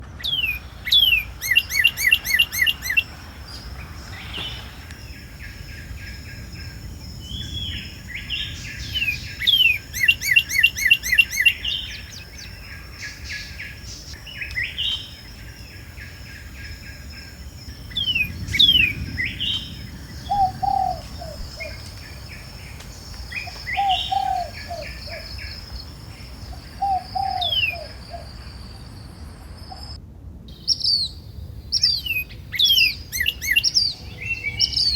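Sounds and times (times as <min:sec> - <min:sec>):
fast repeated bird chirps: 0:00.2 - 0:03.1, 0:08.8 - 0:12.2.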